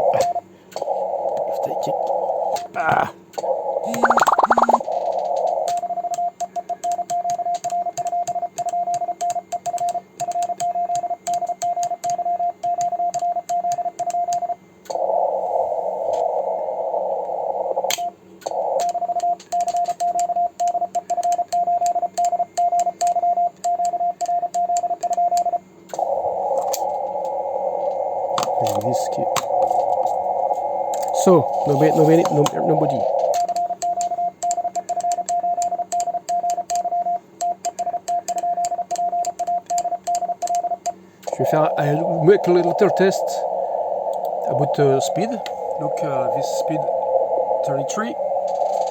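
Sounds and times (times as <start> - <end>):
radio band noise hiss: 0.0 - 5.6, 15.0 - 17.9, 26.0 - 33.5, 41.1 - 48.9
morse code beeping: 3.9 - 4.8, 26.0 - 48.9.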